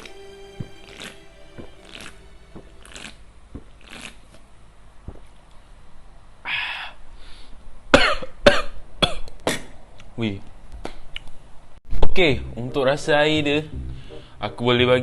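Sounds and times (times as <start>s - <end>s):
man coughing sharply: 8.0s - 9.7s.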